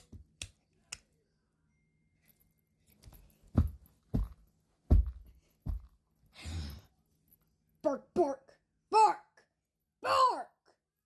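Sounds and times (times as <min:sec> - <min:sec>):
heavy knocks and thumps: 0:03.6 - 0:05.9.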